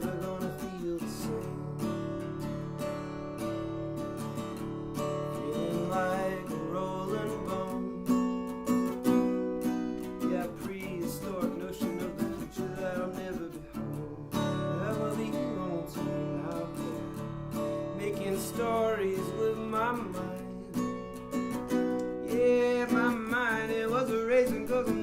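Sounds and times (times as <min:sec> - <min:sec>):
acoustic guitar strumming chords: 0:00.0 - 0:25.0
bending lead guitar melody: 0:00.0 - 0:25.0.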